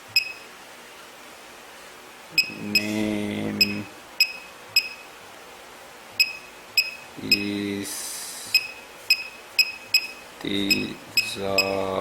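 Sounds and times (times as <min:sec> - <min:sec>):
electronic key clicks: 0:08.6 - 0:11.8.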